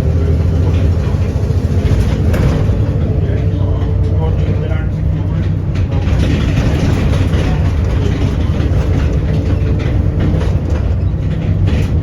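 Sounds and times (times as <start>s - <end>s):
bus diesel engine rumbling: 0.0s - 12.0s.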